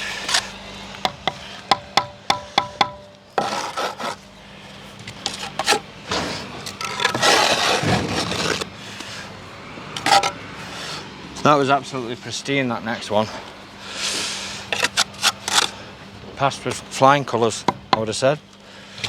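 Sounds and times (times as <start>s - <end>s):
trowel tapping concrete block: 1.0s - 3.6s
trowel scraping mortar: 3.4s - 4.3s, 5.1s - 8.7s, 10.0s - 10.4s, 14.1s - 15.9s.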